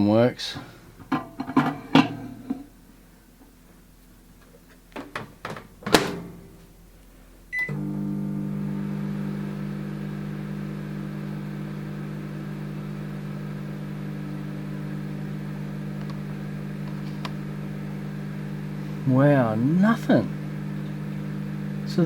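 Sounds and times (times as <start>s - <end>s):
microwave door shutting: 5.1s - 6.6s
microwave oven humming: 5.3s - 22.0s
keypad beep: 7.5s - 7.7s.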